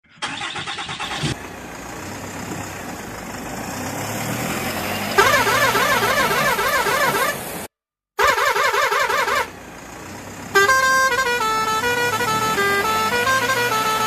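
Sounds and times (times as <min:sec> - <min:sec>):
small engine humming: 0:08.7 - 0:14.0.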